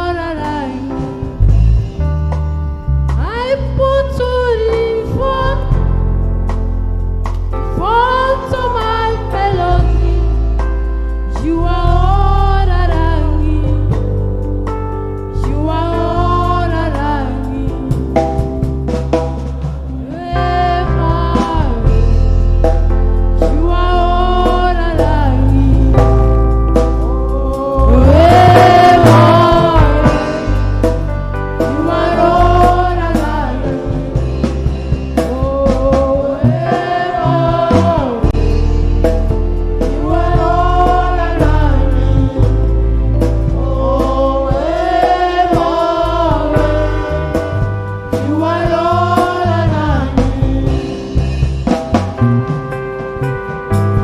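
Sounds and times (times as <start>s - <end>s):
bass line: 0.0s - 54.0s
gospel singing: 7.7s - 14.1s, 15.3s - 18.5s, 23.4s - 51.5s
light drum beat: 25.0s - 42.7s.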